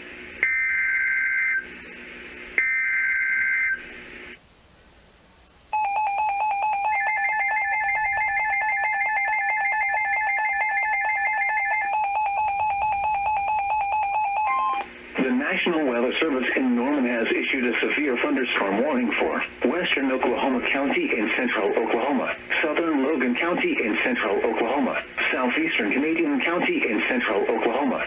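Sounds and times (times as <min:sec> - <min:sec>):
steady alert tone: 0:05.8 - 0:14.8.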